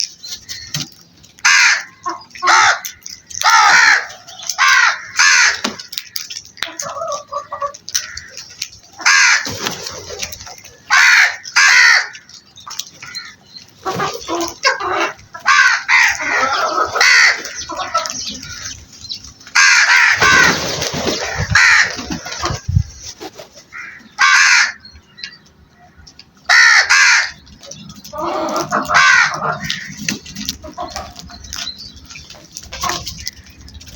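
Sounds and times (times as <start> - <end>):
crows cawing: 1.4 - 9.6, 10.9 - 12.4, 13.0 - 13.4, 14.3 - 18.8, 19.5 - 20.6, 21.2 - 22.6, 23.7 - 25.0, 25.8 - 27.4, 28.1 - 31.2.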